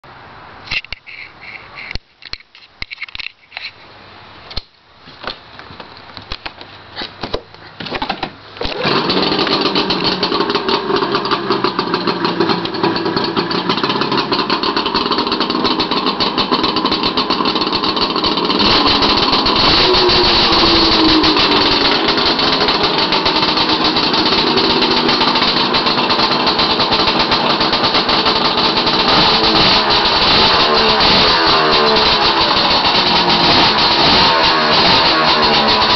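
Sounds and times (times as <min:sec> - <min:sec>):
snowmobile engine popping and running: 0:08.6 - 0:35.9.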